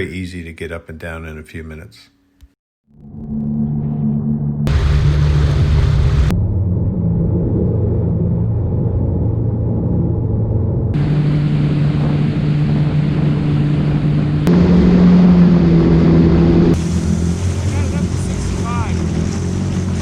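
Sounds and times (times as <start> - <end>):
jet ski engine running: 10.8 - 20.0.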